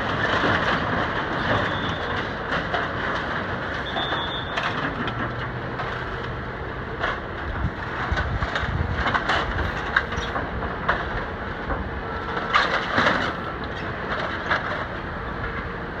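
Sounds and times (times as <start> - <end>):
metallic clanks and debris crunching: 0.0 - 6.3, 6.9 - 15.7
machine rumble: 0.0 - 16.0.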